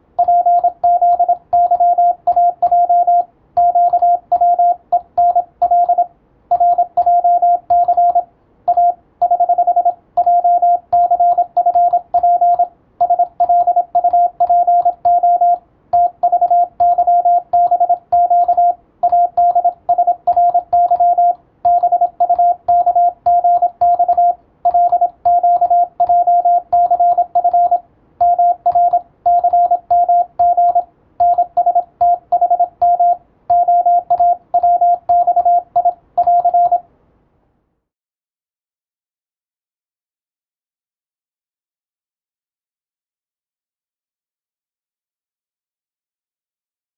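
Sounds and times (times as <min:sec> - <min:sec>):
morse code tone: 0:00.2 - 0:36.8.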